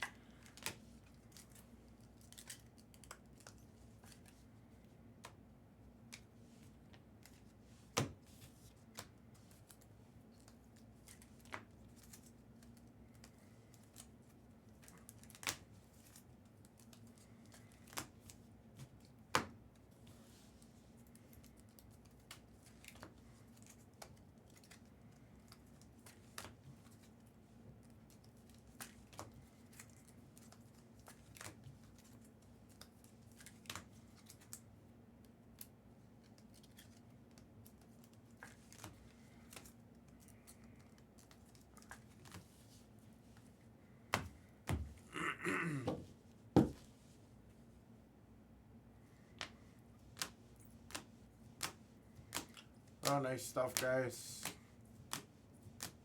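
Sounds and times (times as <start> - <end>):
faint steady hum: 0.0 - 56.0
trading cards clicking and tapping: 49.4 - 56.0.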